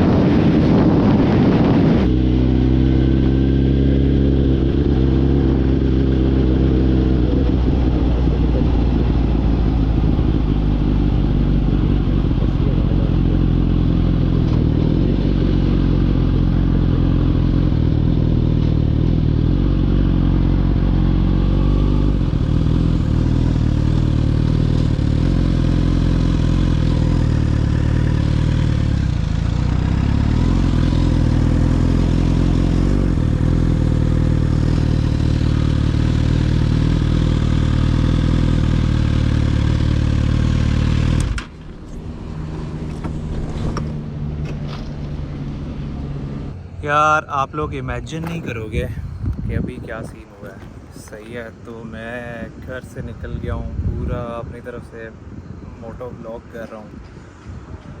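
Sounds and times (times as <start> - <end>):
muffled motorcycle engine running: 0.0 - 46.8, 47.6 - 51.0.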